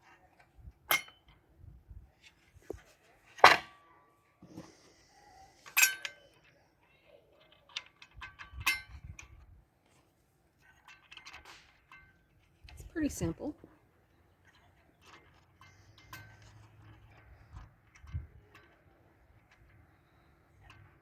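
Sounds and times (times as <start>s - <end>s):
metal clinks of saw blade: 5.7s - 6.3s.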